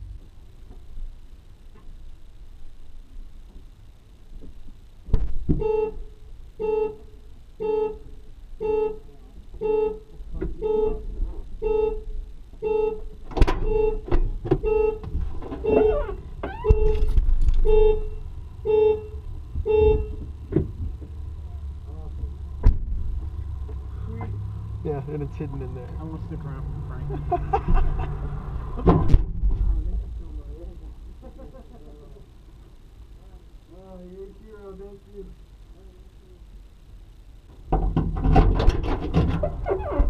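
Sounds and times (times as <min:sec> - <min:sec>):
car horn honks: 0:05.6 - 0:15.0, 0:15.6 - 0:20.3
knocks and thumps: 0:13.3 - 0:17.7, 0:19.5 - 0:21.2, 0:22.2 - 0:23.3, 0:28.8 - 0:29.7, 0:37.7 - 0:40.0.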